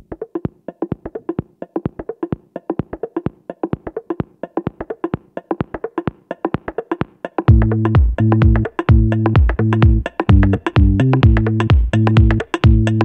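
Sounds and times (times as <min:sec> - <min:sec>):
plucked woody percussion music: 0:07.5 - 0:13.0.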